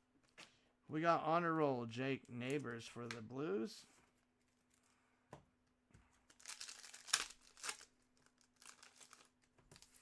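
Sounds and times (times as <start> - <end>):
wrapper crinkling and tearing: 6.3 - 10.0.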